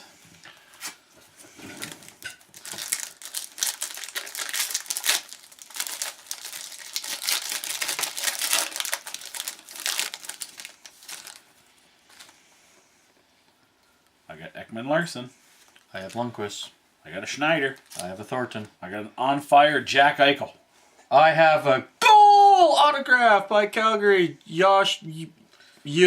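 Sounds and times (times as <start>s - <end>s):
plastic wrappers torn and crinkled: 1.8s - 12.4s, 17.7s - 18.2s.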